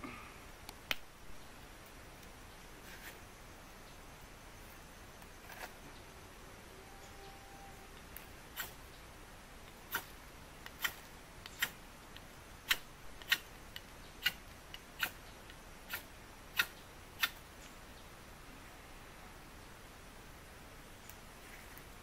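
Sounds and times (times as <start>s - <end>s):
campfire crackling snaps: 0.6s - 1.1s.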